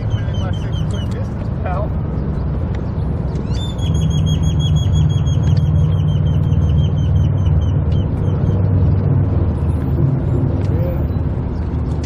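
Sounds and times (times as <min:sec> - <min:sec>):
bird chirping rapidly: 0:00.0 - 0:01.3, 0:02.3 - 0:08.9
road traffic rumble: 0:00.0 - 0:12.0.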